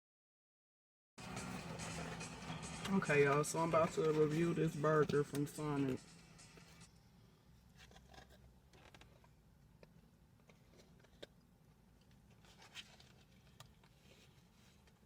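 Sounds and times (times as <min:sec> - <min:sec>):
faint handling clicks and rustles: 0:07.6 - 0:15.0.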